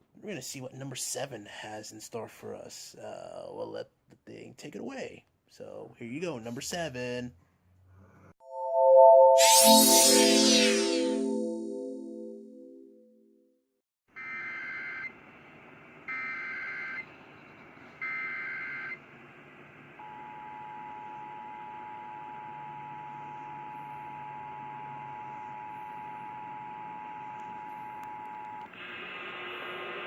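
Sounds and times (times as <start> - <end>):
two-tone attention signal: 8.5 - 12.8.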